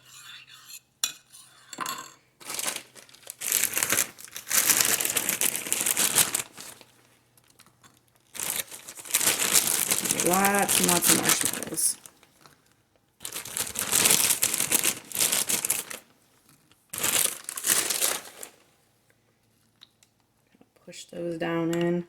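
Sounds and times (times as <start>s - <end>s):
plastic bag crinkling: 2.4s - 16.1s, 16.7s - 18.7s.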